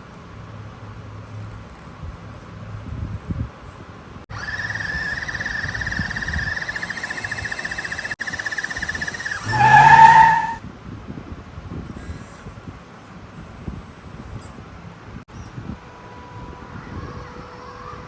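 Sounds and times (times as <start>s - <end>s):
electric motor and gearbox whining: 4.3s - 10.6s.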